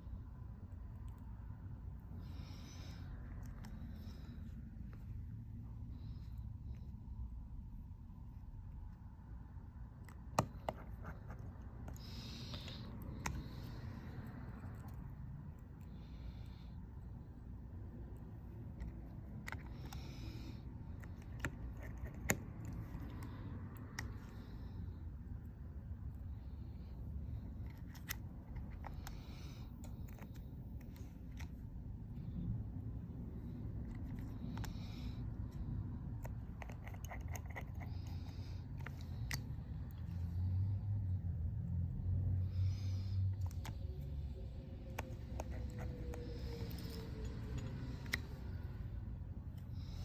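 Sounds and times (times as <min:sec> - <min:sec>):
low steady hum: 0:00.0 - 0:50.0
small tools clicking on phone parts: 0:10.0 - 0:16.0, 0:18.1 - 0:24.5, 0:27.3 - 0:31.7, 0:33.7 - 0:40.3, 0:43.3 - 0:48.9.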